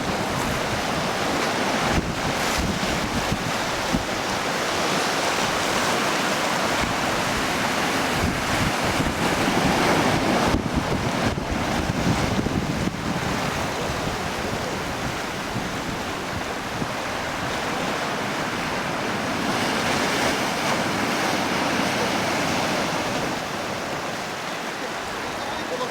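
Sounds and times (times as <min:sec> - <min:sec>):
wind buffeting microphone: 0:00.0 - 0:24.2
sea waves washing on rocky shore: 0:00.0 - 0:25.9.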